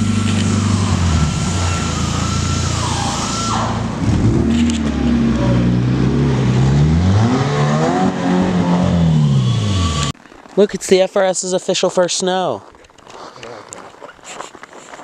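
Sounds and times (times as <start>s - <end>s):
car engine revving: 0.0s - 10.2s.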